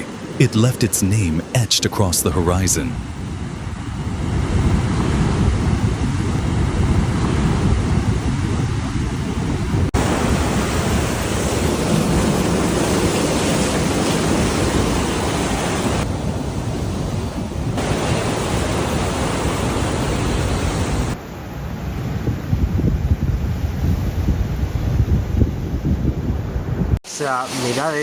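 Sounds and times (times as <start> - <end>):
storm wind: 0.0 - 27.0
heavy surf rushing: 0.0 - 28.0
wind buffeting microphone: 3.0 - 27.0.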